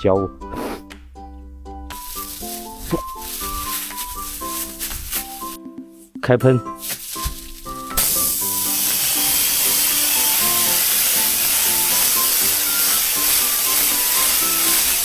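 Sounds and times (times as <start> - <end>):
light melodic background music: 0.0 - 15.0
spray gun hissing: 2.0 - 5.6, 6.8 - 15.0.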